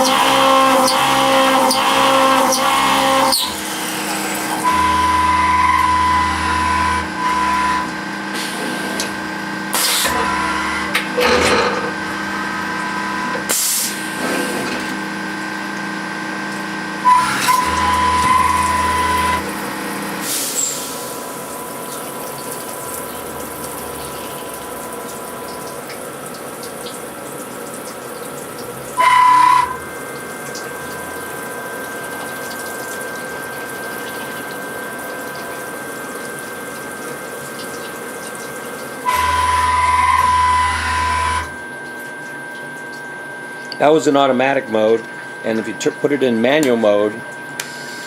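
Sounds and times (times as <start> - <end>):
splashing coolant: 0.0 - 11.2, 12.0 - 43.7
high machine whine: 0.0 - 48.0
milling machine motor hum: 0.0 - 48.0
coolant pump hiss: 8.2 - 10.9, 12.1 - 15.0, 17.2 - 29.0.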